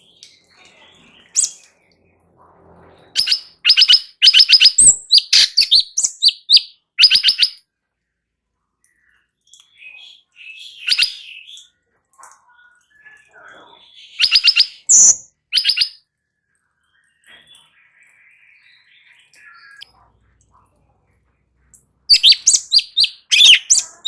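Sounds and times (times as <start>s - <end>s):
bird chattering song: 0.0s - 1.8s, 3.1s - 7.6s, 9.5s - 11.7s, 12.3s - 16.0s, 17.0s - 20.0s, 22.1s - 24.0s.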